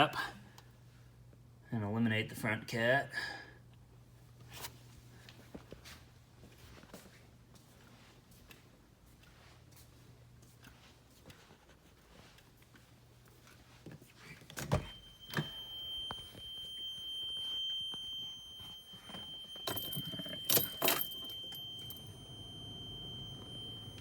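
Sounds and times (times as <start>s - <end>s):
vehicle electronic warning tone: 14.7s - 24.0s.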